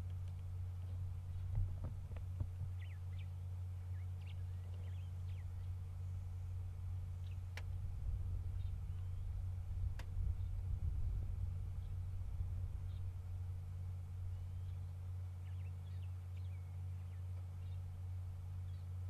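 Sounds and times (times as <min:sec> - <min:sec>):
vehicle engine idling: 0:00.0 - 0:19.0
faint bird chirps: 0:02.7 - 0:06.3, 0:07.1 - 0:07.6, 0:08.4 - 0:09.5, 0:11.7 - 0:12.1, 0:12.8 - 0:13.2, 0:14.2 - 0:19.0
light clicks: 0:07.5 - 0:07.8.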